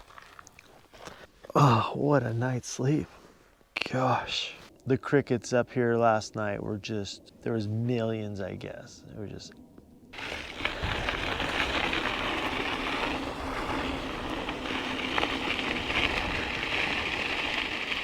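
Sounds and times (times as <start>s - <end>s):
faint hum: 3.3s - 11.8s
road and wind noise: 9.8s - 18.0s.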